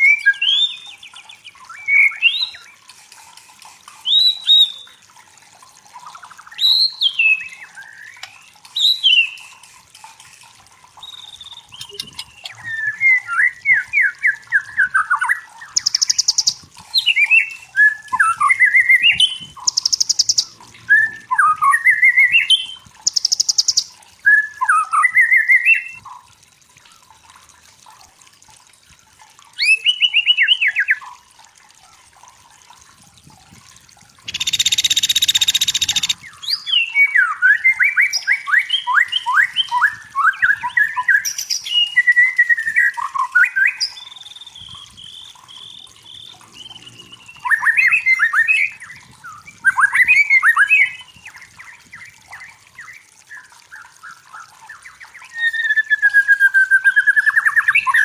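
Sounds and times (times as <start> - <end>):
bird singing whistled phrases: 11.0 - 26.0, 34.3 - 51.4, 52.3 - 58.0.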